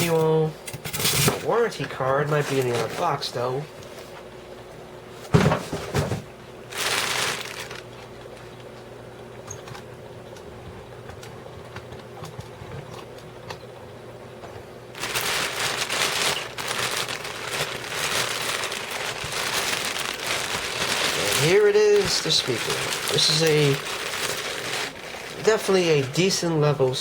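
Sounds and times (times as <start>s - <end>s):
packaging rustling and crinkling: 1.8s - 3.5s, 5.4s - 8.6s, 15.0s - 26.7s.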